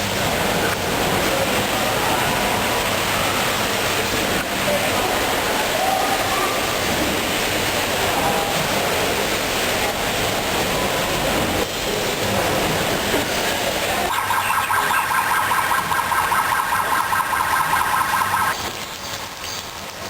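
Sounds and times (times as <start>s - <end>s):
steady rushing noise: 12.1s - 18.9s
electronic warbling alarm: 14.1s - 18.6s.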